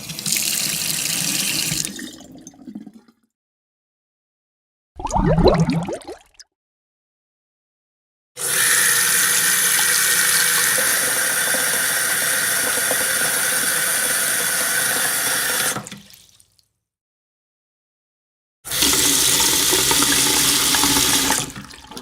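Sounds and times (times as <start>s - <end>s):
tap water running into sink: 0.0s - 2.2s, 8.4s - 16.2s, 18.7s - 22.0s.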